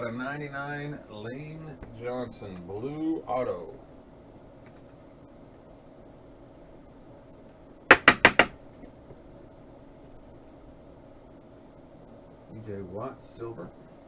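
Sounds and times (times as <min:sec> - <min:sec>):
sharp knocks: 0:07.9 - 0:08.6.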